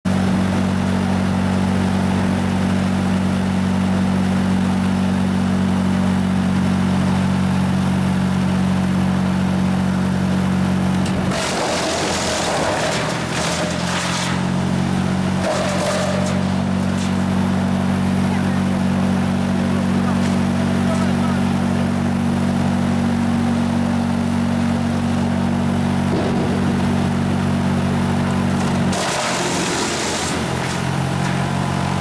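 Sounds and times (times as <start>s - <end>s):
wood chipper engine running: 0.1s - 32.0s
wood chipping rush: 11.3s - 17.4s, 26.1s - 32.0s.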